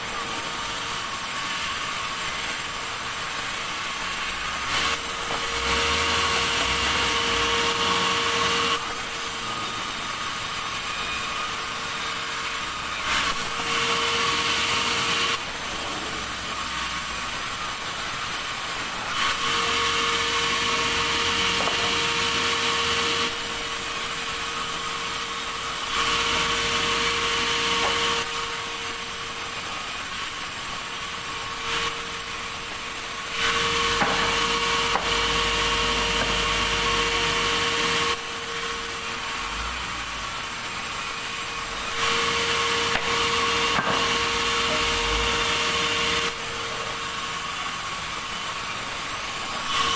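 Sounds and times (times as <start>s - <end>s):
sawmill saw cutting log: 0.0s - 49.9s.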